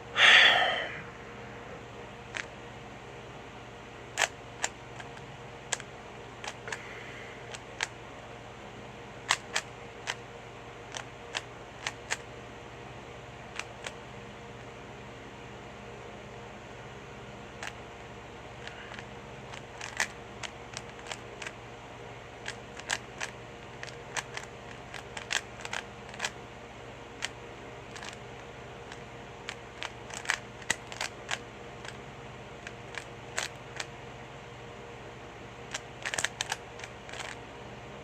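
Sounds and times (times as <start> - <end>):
steady low hum: 0.0 - 38.0
puzzle cube layers clicking: 9.3 - 10.2, 10.9 - 12.2, 18.6 - 21.5, 22.4 - 26.3, 27.9 - 28.2, 28.9 - 32.0, 32.6 - 33.9, 35.7 - 37.4.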